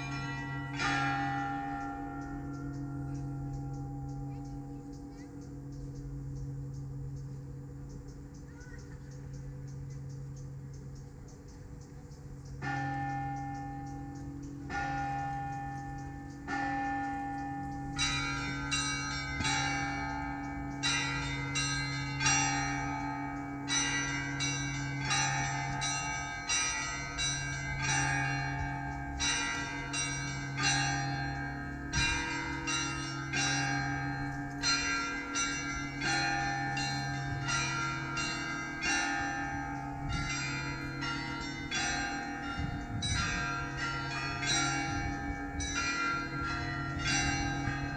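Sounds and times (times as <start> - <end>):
low bell humming: 0.0 - 47.9
small bells ringing fast: 12.6 - 47.9.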